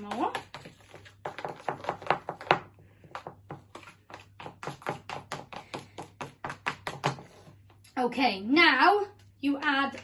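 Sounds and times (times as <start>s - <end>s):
utensil scraping and knocking container: 0.0s - 7.7s.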